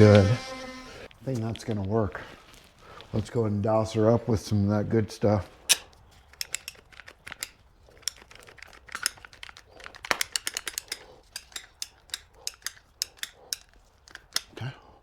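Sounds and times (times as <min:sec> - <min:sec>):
foam clicks and crinkles: 0:05.4 - 0:14.7.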